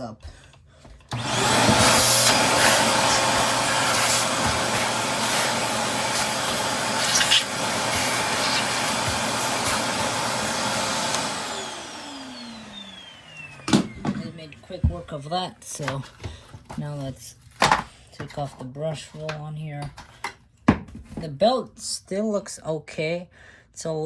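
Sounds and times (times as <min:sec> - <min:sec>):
vacuum cleaner motor whine: 0:01.1 - 0:15.0
suction rushing: 0:01.2 - 0:12.5.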